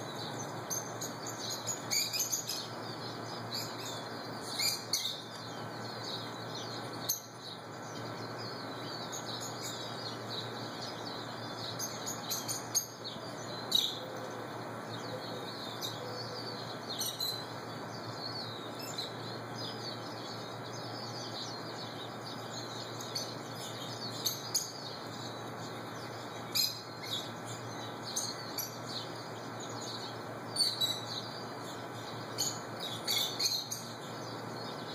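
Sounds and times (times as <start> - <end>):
shrill bird calls: 0.0 - 7.5, 32.0 - 34.9
lovebirds chattering: 0.0 - 34.9.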